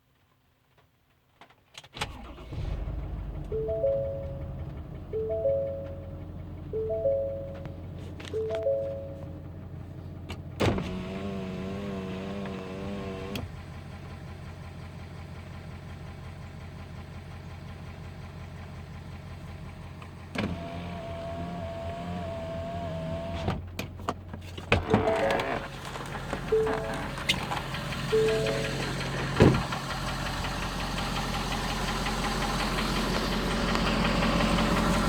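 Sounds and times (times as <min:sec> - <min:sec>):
clicks: 0:06.8 - 0:09.3, 0:25.0 - 0:29.1.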